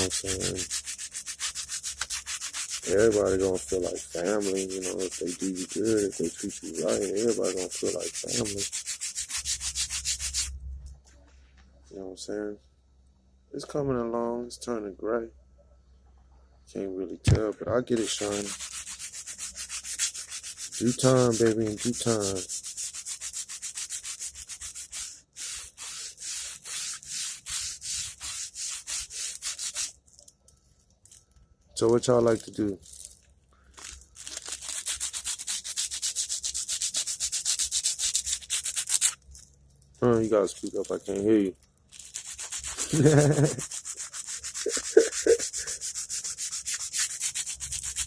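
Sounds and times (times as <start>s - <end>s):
sandpaper scratching on metal: 0.0s - 10.5s, 17.9s - 30.0s, 34.4s - 39.2s, 40.2s - 48.0s.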